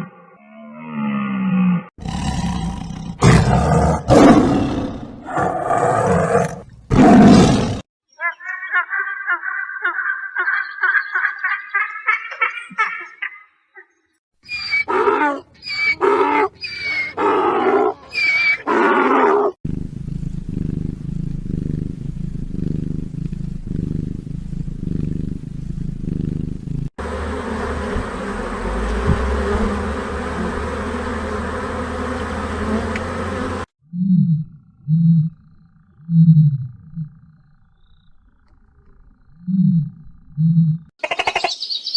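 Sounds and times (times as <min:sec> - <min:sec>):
long low rumbling: 0:27.7 - 0:31.8.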